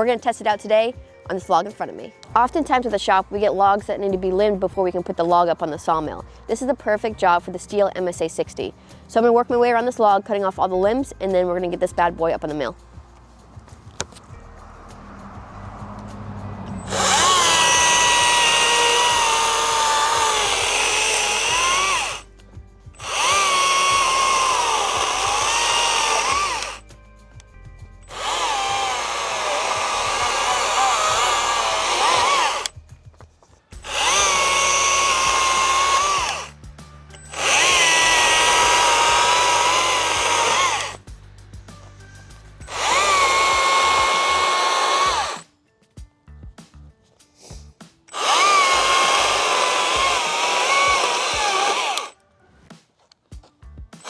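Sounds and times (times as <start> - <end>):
battery chainsaw cutting log: 16.8 - 22.3, 23.0 - 26.8, 28.1 - 32.8, 33.8 - 36.5, 37.2 - 41.0, 42.6 - 45.4, 48.1 - 52.1.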